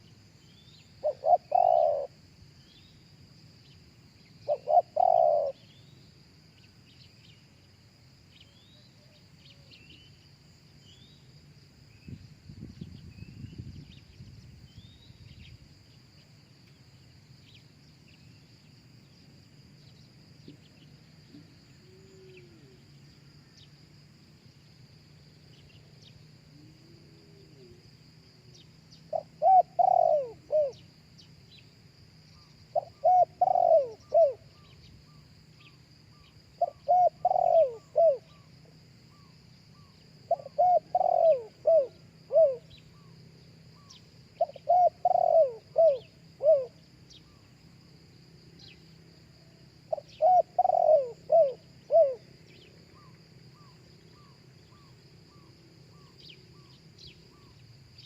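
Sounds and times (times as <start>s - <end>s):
high insect drone: 0.0s - 58.0s
dove cooing: 1.0s - 2.2s, 4.4s - 5.7s, 21.4s - 22.9s, 26.5s - 27.8s, 28.5s - 30.8s, 32.7s - 35.2s, 36.6s - 38.5s, 39.2s - 43.1s, 43.8s - 46.8s, 49.9s - 56.7s.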